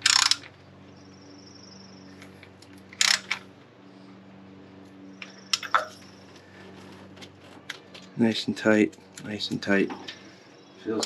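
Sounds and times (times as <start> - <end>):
sharp metallic clicks: 0.0 - 0.5, 2.9 - 3.4.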